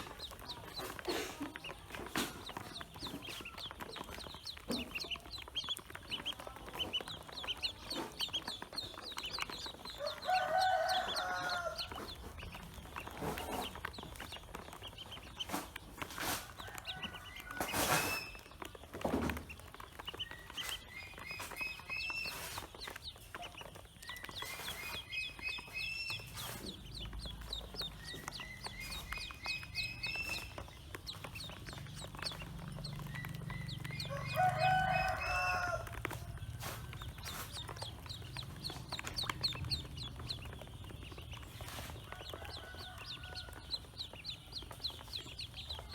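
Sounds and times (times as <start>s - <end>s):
ducklings peeping: 0.0s - 45.9s.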